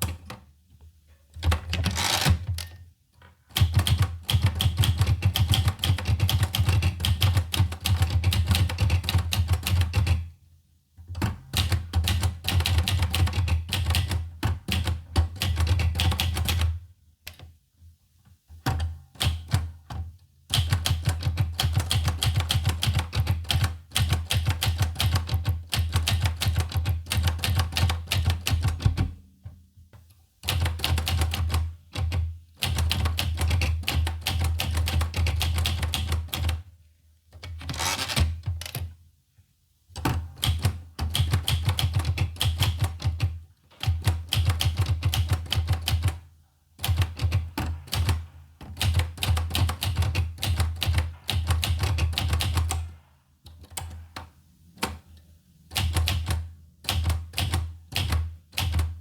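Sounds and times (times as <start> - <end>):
manual typewriter keystrokes: 1.4 - 2.8, 3.5 - 10.3, 11.1 - 17.4, 18.7 - 29.2, 30.4 - 36.6, 40.0 - 46.2, 46.8 - 55.0, 55.7 - 59.0.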